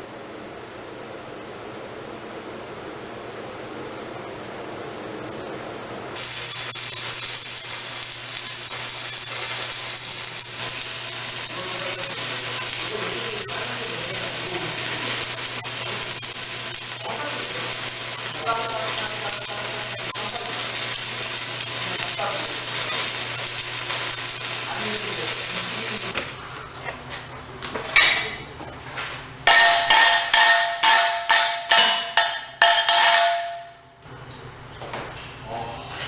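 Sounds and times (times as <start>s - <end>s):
welding arc crackling and hissing: 6.2s - 26.2s, 29.5s - 33.6s
ringing hammer blows on metal: 29.5s - 34.0s.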